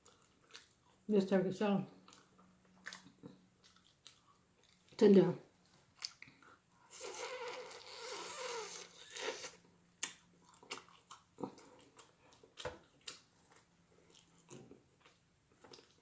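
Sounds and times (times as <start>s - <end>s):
chewing: 0.0s - 1.1s, 1.9s - 16.0s
wet sucking and smacking: 5.8s - 11.6s.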